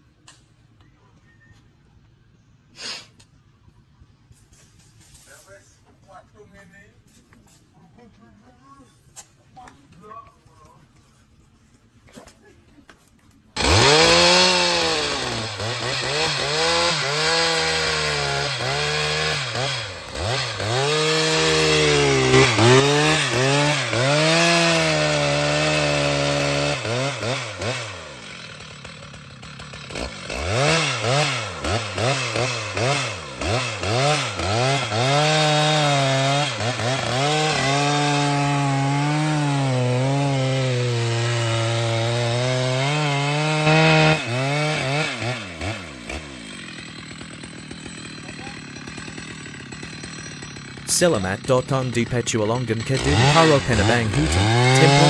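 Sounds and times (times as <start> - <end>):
chainsaw cutting wood: 13.6 - 55.0.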